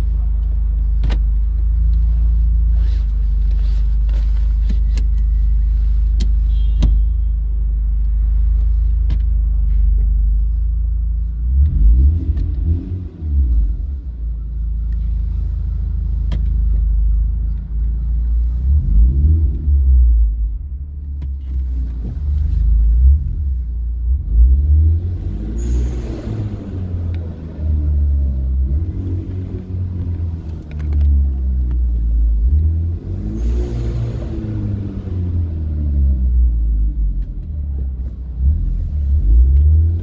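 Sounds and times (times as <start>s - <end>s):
car exhaust rumble: 0.0s - 40.0s
car engine revs: 8.2s - 40.0s.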